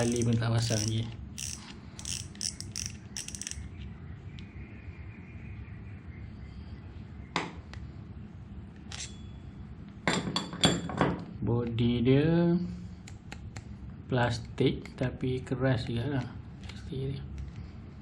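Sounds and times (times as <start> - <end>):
fishing reel mechanical clicks: 0.0 - 3.7.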